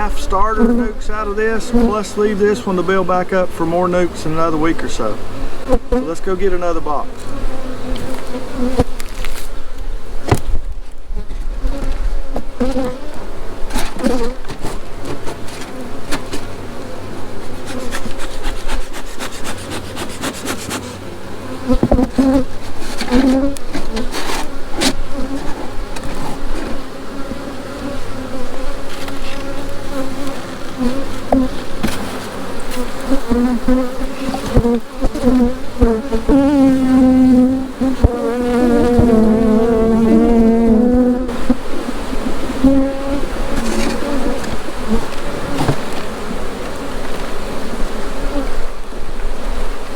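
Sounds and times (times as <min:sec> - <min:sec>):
bees buzzing: 0:00.0 - 0:49.9.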